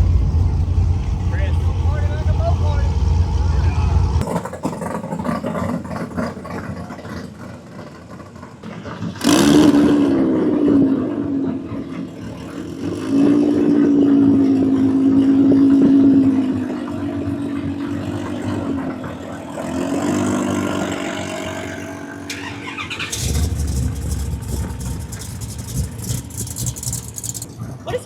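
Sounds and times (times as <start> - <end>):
car engine revving: 0.0 - 27.5
rough engine rumble with crackle: 0.0 - 28.0.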